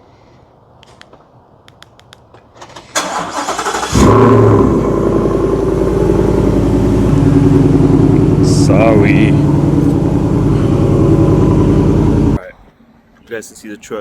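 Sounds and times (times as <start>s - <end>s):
engine starting and idling: 2.6s - 12.4s.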